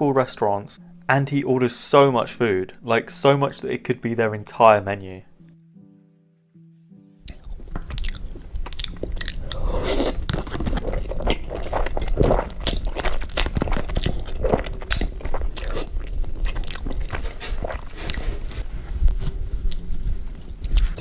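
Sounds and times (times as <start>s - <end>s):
person chewing crunchy food: 7.3s - 18.7s, 19.6s - 21.0s.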